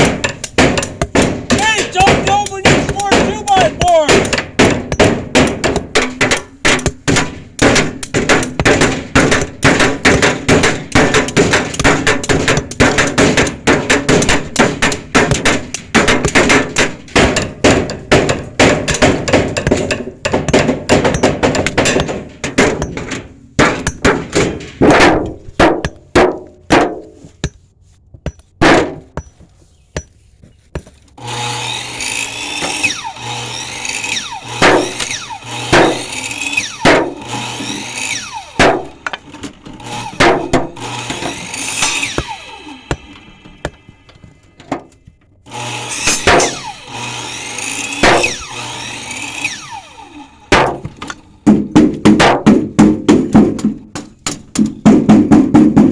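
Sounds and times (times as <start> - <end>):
hammering: 0.0 - 55.9
power drill running: 31.2 - 38.6, 45.5 - 50.5.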